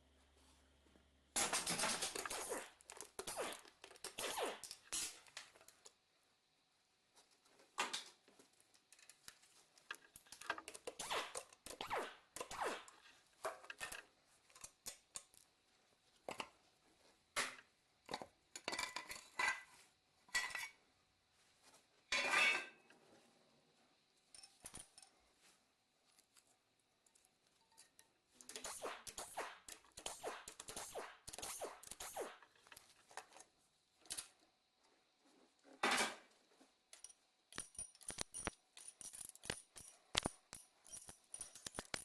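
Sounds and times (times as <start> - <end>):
metal tools clinking and clattering: 18.6 - 19.7, 20.3 - 20.8, 22.1 - 22.8, 24.3 - 25.1, 37.0 - 42.0.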